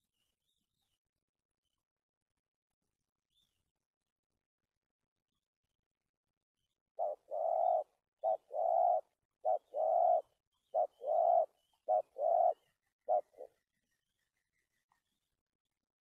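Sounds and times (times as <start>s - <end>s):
dove cooing: 7.0s - 13.6s.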